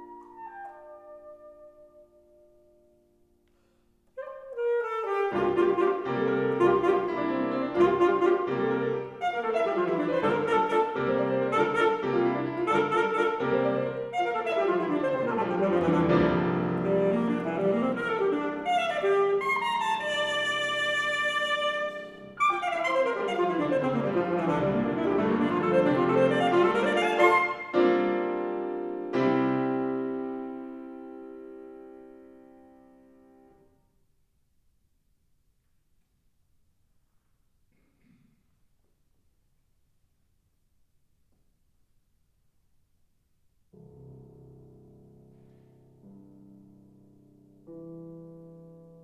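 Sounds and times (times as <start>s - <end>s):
alto saxophone and piano playing: 0.0s - 2.8s, 4.1s - 33.6s.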